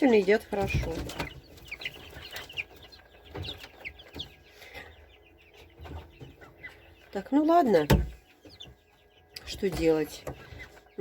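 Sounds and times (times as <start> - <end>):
chicks peeping: 0.0 - 11.0.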